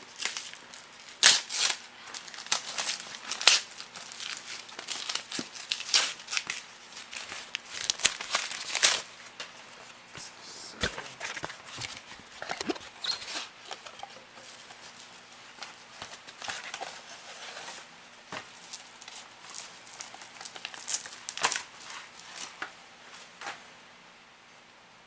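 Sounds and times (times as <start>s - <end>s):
packaging torn open and crinkled: 0.1s - 9.1s, 18.6s - 22.6s.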